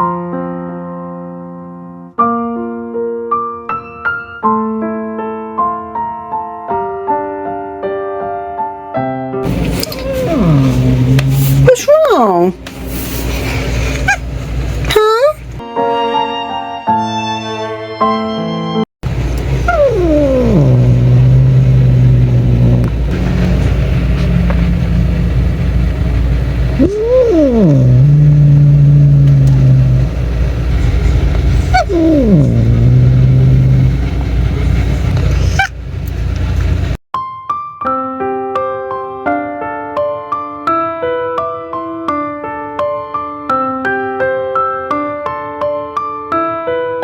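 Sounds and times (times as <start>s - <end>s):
slow piano music: 0.0s - 9.9s, 37.2s - 47.0s
cat growling: 9.5s - 12.1s, 19.5s - 25.4s, 26.7s - 35.8s
cat yowling: 9.6s - 12.2s, 19.6s - 22.9s, 26.8s - 30.2s, 31.6s - 34.0s.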